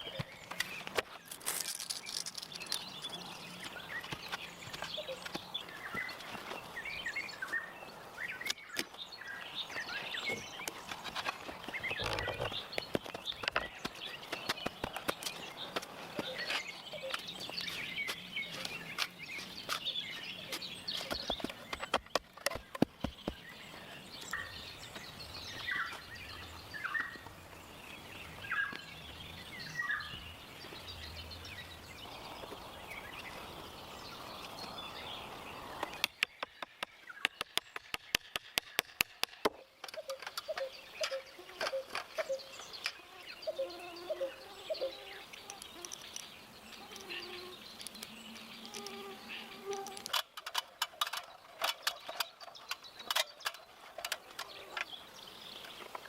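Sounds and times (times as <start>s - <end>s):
birds chirping: 0.0s - 56.0s
sharp clicks and knocks: 20.5s - 23.4s, 35.8s - 43.0s, 49.8s - 55.0s.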